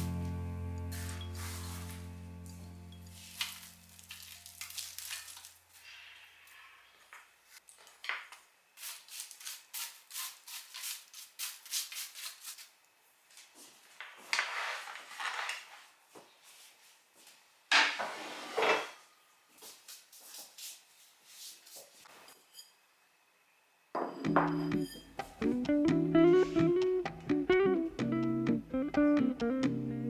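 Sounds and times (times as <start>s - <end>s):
rattling rustling in bowl: 3.1s - 5.6s.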